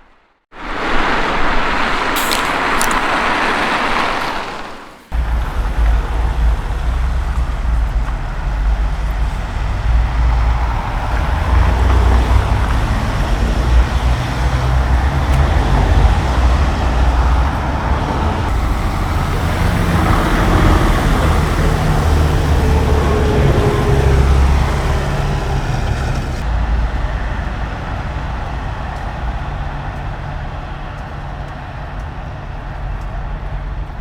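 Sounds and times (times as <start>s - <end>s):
dense traffic rumble: 0.0s - 34.0s.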